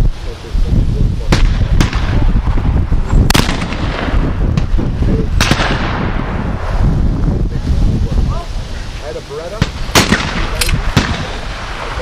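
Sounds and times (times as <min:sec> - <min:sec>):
steady low rumble: 0:00.0 - 0:12.0
shotgun shots: 0:01.3 - 0:02.5, 0:03.3 - 0:04.7, 0:05.4 - 0:06.4, 0:09.6 - 0:12.0.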